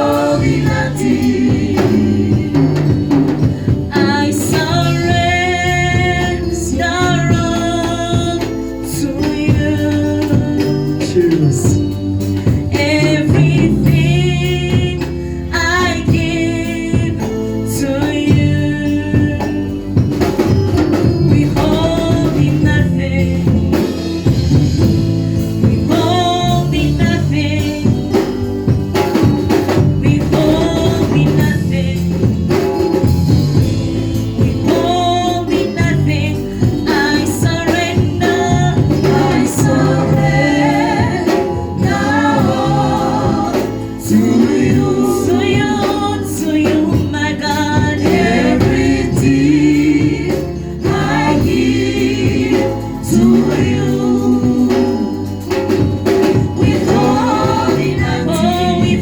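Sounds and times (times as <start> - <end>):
band playing: 0.0 - 59.0
bass: 0.0 - 59.0
steady drum beat: 0.0 - 59.0
voices singing gospel: 0.0 - 59.0.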